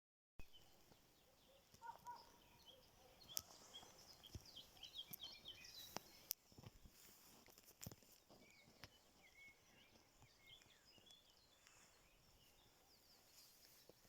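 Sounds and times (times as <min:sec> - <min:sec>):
faint birds chirping: 0:00.4 - 0:14.0.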